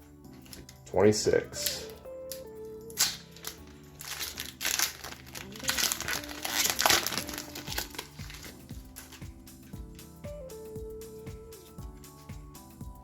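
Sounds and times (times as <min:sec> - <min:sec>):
soft background music: 0:00.0 - 0:13.0
foil wrapper crinkling: 0:02.9 - 0:09.7.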